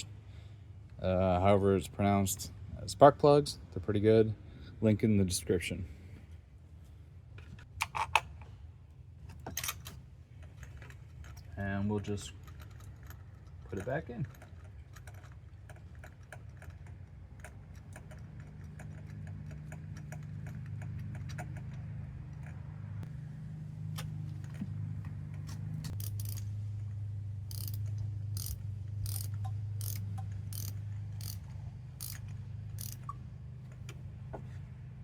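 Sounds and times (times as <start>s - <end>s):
ratchet wrench clicking: 12.4s - 22.6s, 25.9s - 26.6s, 27.4s - 33.2s.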